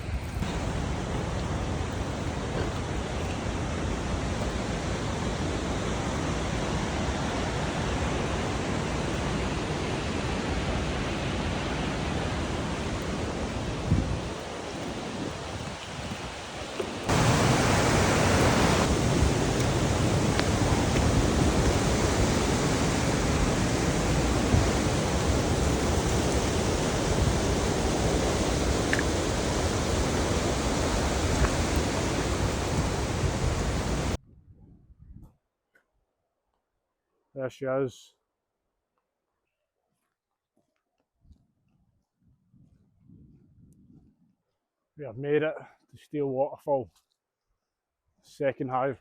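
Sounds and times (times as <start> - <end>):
flowing water rushing: 0.0 - 34.2.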